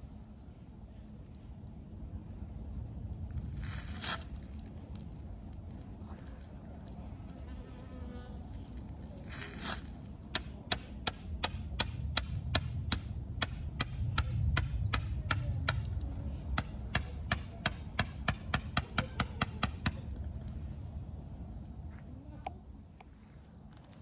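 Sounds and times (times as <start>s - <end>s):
hammer blows: 10.3s - 16.0s, 16.6s - 20.1s.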